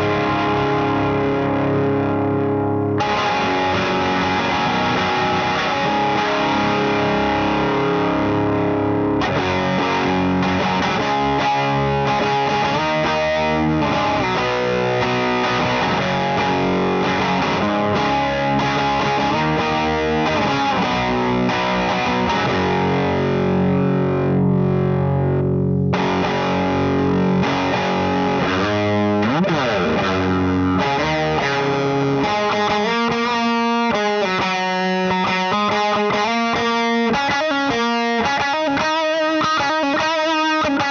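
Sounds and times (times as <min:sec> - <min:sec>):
distorted electric guitar: 0:00.0 - 0:40.9.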